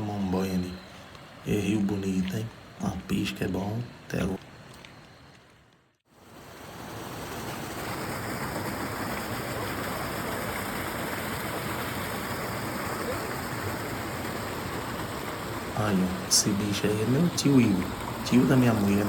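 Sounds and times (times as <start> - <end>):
river water rushing: 6.7 - 19.0.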